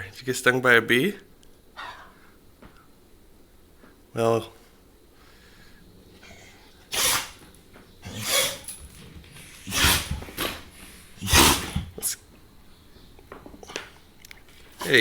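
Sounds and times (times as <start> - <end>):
dog sneezing: 6.2 - 12.2.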